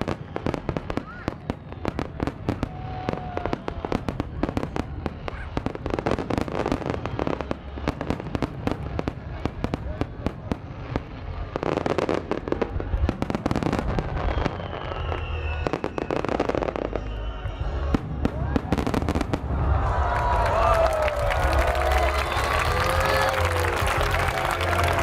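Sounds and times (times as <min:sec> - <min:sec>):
fireworks bursting and crackling: 0:00.0 - 0:25.0
falling firework whistle: 0:13.6 - 0:18.0.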